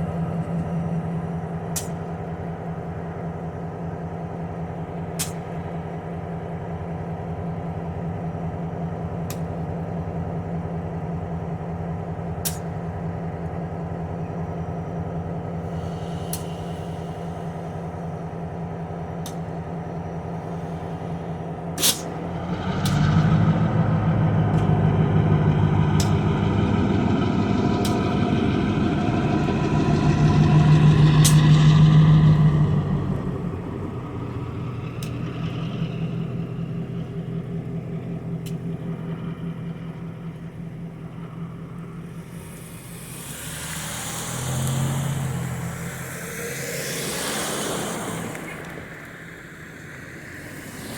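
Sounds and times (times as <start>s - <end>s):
train pitched drone: 0.0s - 50.9s
train rolling rumble: 0.0s - 50.9s
train wheels clicking: 24.0s - 33.3s.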